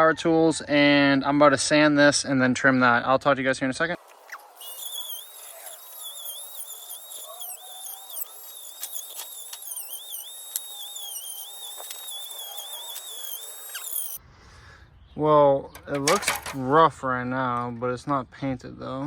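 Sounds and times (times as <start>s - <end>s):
sharp clicks: 4.1s - 14.2s
electric sander whining: 4.5s - 14.2s.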